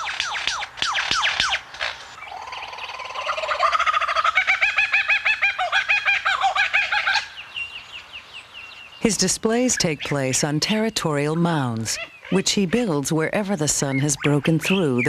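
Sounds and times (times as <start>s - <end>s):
lyrebird whistling and warbling: 0.0s - 7.8s, 10.9s - 12.8s, 13.7s - 15.0s.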